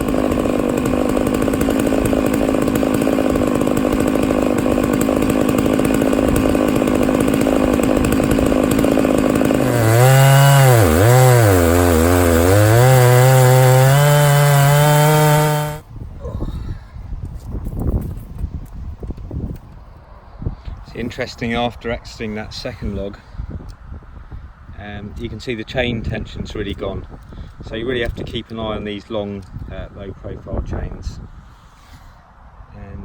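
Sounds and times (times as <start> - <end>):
chainsaw cutting through log: 0.0 - 15.8.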